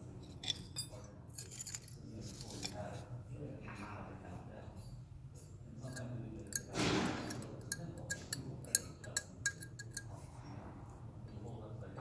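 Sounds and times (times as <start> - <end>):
ringing clicks and taps on metal: 5.9 - 10.2.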